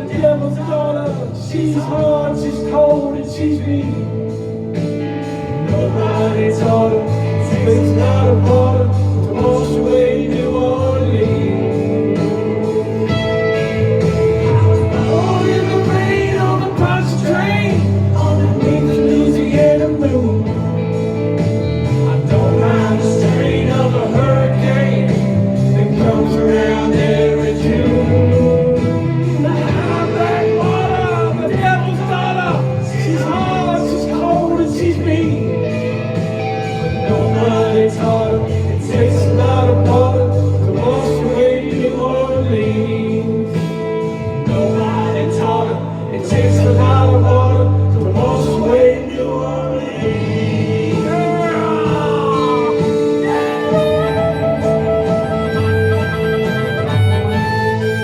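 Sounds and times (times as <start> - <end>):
sustained bass notes: 0.0 - 58.0
melody bending in pitch: 53.1 - 58.0.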